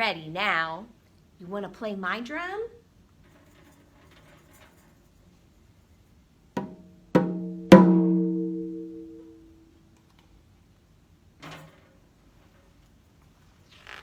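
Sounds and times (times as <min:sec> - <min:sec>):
drum strokes ringing: 0:06.6 - 0:09.4.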